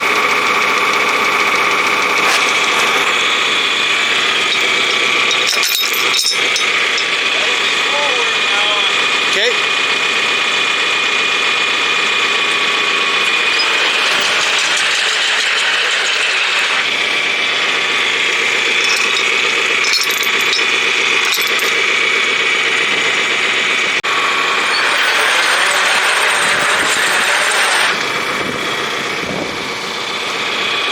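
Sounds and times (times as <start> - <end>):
ratcheting gear rattle: 4.2 - 7.2, 18.7 - 21.8.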